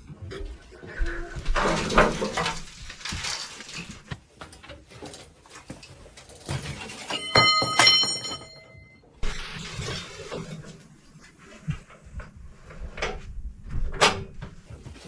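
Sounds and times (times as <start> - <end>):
metal clanks and knocks: 1.5 - 8.9
struck steel part ringing: 7.1 - 8.7.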